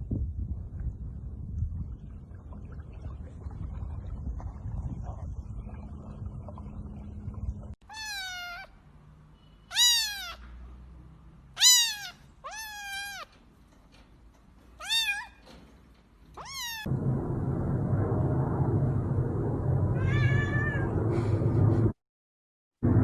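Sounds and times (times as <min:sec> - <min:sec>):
cat meowing: 0:07.9 - 0:08.8, 0:09.7 - 0:10.5, 0:11.6 - 0:13.4, 0:14.8 - 0:15.4, 0:16.4 - 0:16.9, 0:20.0 - 0:21.0
low rushing noise: 0:16.3 - 0:22.0.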